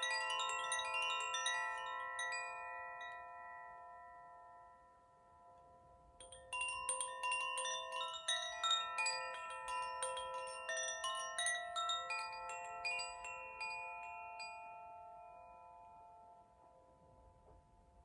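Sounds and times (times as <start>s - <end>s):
wind chime ringing: 0.0s - 16.7s.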